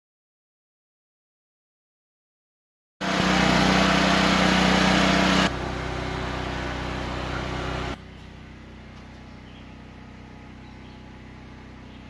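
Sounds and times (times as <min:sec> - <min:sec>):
generator engine running: 0:03.0 - 0:12.0.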